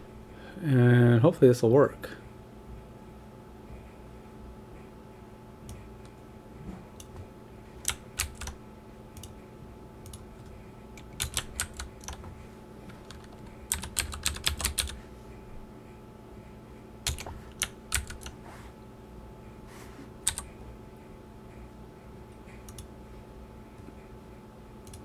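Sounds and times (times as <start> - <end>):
faint steady hum: 0.0 - 25.0
computer keyboard typing: 7.0 - 8.6, 9.2 - 9.4, 10.0 - 15.0, 17.0 - 18.4, 20.2 - 20.6, 22.6 - 23.0.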